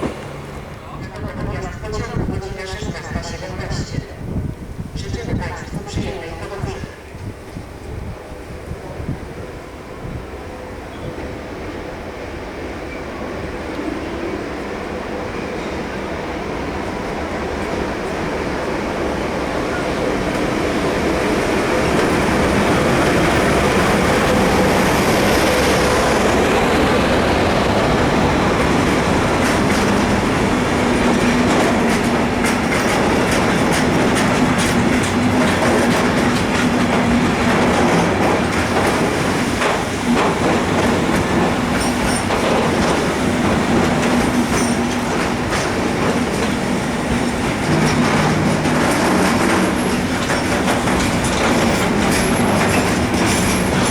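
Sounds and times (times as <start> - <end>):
freight train rumbling past: 0.0 - 53.9
wheels clacking over rail joints: 15.6 - 53.9.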